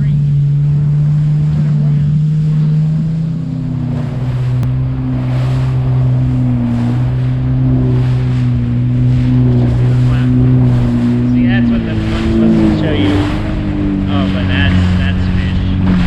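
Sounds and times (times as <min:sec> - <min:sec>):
personal watercraft engine running: 0:00.0 - 0:16.0.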